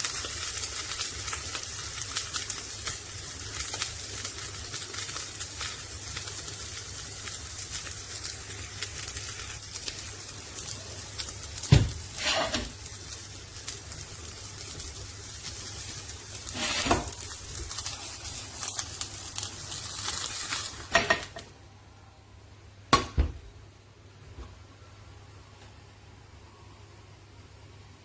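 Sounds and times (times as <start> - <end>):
sizzling hiss: 0.0 - 21.5.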